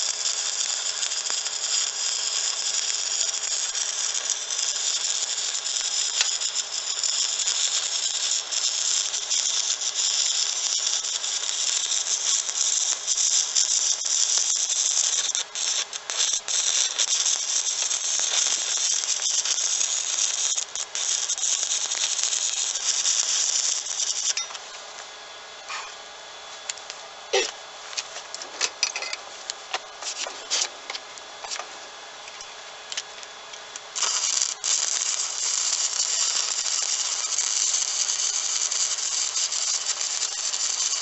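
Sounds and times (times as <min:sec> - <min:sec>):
welding arc crackling: 0:00.0 - 0:25.1, 0:29.5 - 0:41.0.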